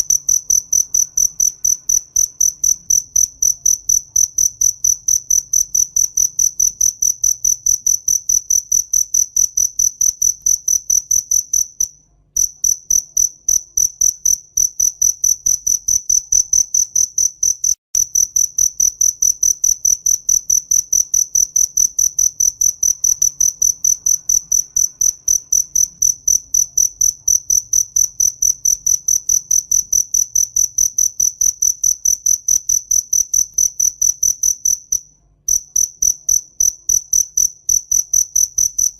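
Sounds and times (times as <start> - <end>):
cricket chirping: 0.0 - 38.9.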